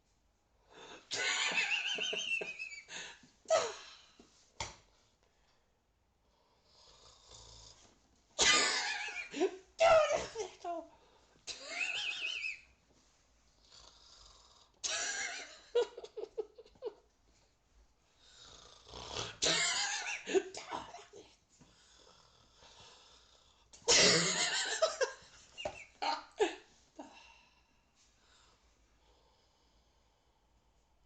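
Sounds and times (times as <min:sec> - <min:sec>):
person snoring: 0:06.6 - 0:07.8, 0:13.6 - 0:14.8, 0:18.2 - 0:19.5, 0:21.8 - 0:23.6.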